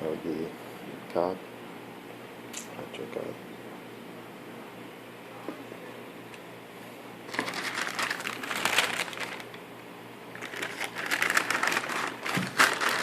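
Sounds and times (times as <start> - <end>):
packing wrap crinkling: 7.3 - 9.6, 10.3 - 13.0.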